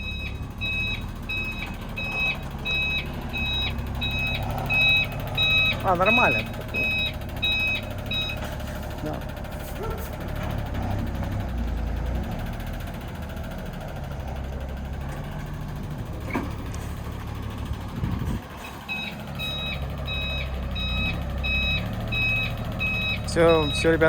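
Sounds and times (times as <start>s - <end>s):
reversing alarm beeping: 0.0s - 9.1s, 18.6s - 24.0s
truck engine running: 0.0s - 24.0s.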